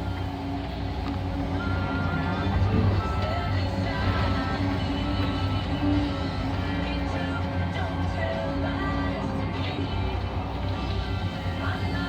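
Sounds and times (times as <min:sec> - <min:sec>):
background music: 0:00.0 - 0:12.0
steady low hum: 0:00.0 - 0:12.0.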